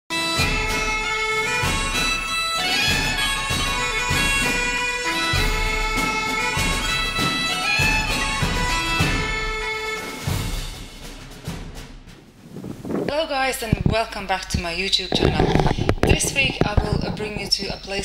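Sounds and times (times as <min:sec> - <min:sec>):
wind instrument melody: 0:00.1 - 0:10.7
low drum beat: 0:10.3 - 0:17.8.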